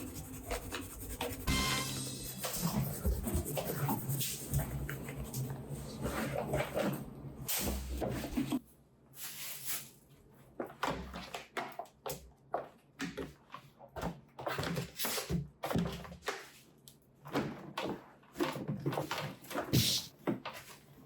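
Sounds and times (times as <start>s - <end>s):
toothbrush scrubbing teeth: 0.0s - 6.8s.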